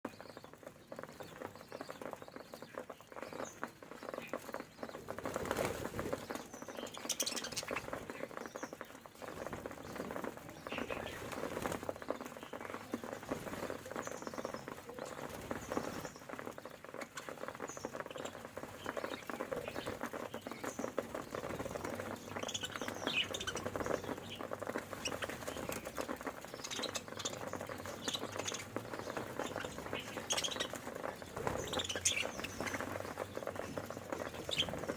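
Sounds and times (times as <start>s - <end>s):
budgerigars chirping: 15.6s - 34.9s.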